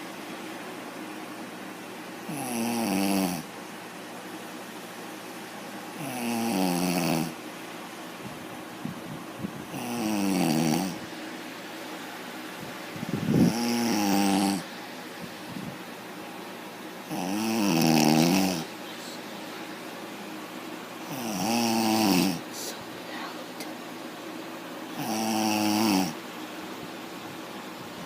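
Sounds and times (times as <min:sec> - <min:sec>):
woman snoring loudly: 0:02.3 - 0:03.5, 0:06.0 - 0:07.4, 0:09.7 - 0:11.0, 0:13.4 - 0:14.7, 0:17.1 - 0:18.7, 0:21.1 - 0:22.4, 0:25.0 - 0:26.2.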